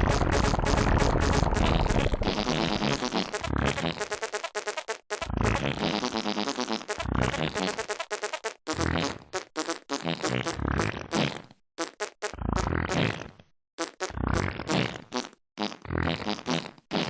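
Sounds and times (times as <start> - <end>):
fart sounds played as a melody: 0.0 - 17.0.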